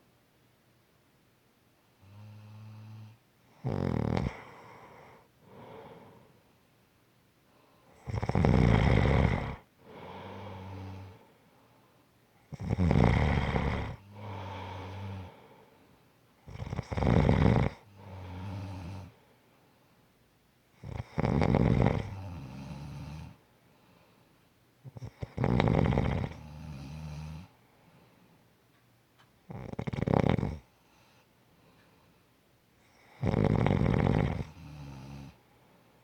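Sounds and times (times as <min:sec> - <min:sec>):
person snoring: 0:02.1 - 0:06.2, 0:08.0 - 0:11.3, 0:12.5 - 0:15.7, 0:16.5 - 0:19.2, 0:20.8 - 0:23.4, 0:25.0 - 0:27.5, 0:29.5 - 0:30.6, 0:33.0 - 0:35.4.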